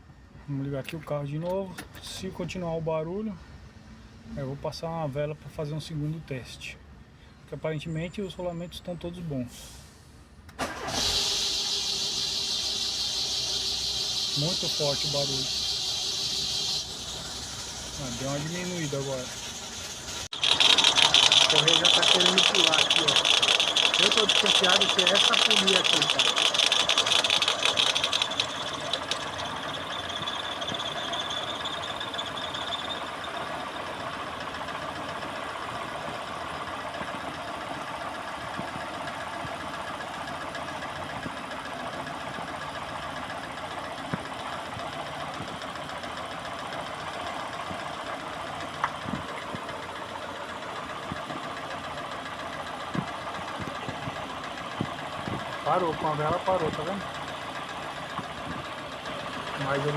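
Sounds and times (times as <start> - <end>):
drive belt squealing: 10.6 - 36.6, 46.0 - 59.9
car engine idling: 10.6 - 59.9.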